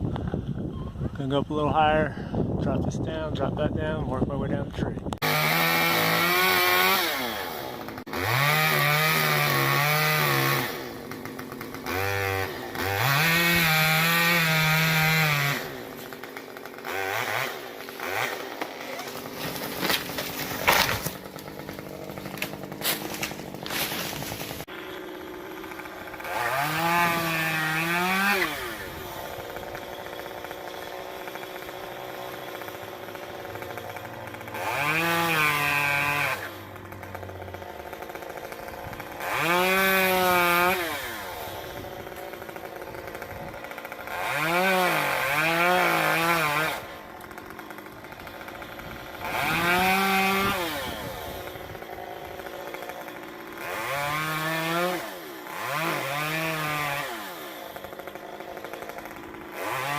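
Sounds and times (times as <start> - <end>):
chainsaw idling and revving: 3.1 - 59.9.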